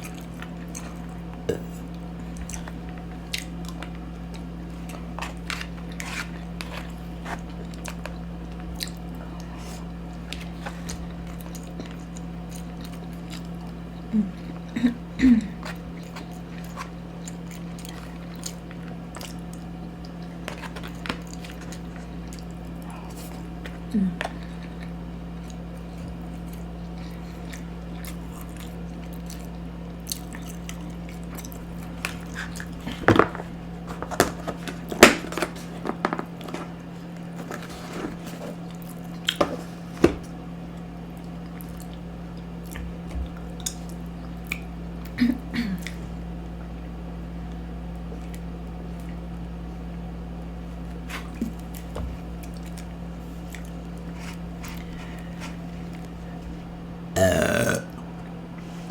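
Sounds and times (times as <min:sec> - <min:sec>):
person chewing: 0:00.0 - 0:35.0, 0:50.8 - 0:58.4
steady low hum: 0:00.0 - 0:58.9.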